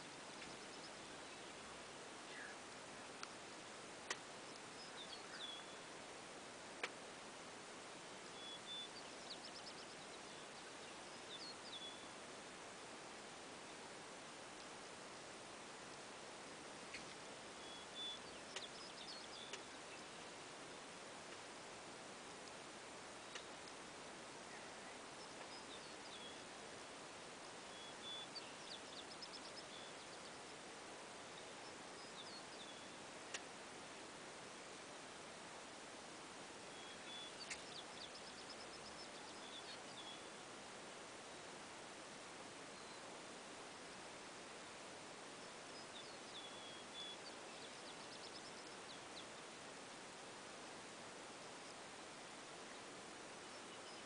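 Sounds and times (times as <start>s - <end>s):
background hiss: 0.0s - 54.0s
songbirds chirping: 0.0s - 54.0s.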